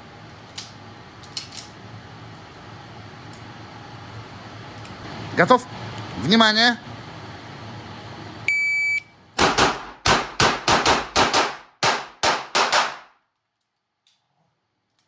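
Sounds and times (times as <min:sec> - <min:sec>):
shot timer beep: 0:08.5 - 0:09.0
handgun shots: 0:09.4 - 0:13.1.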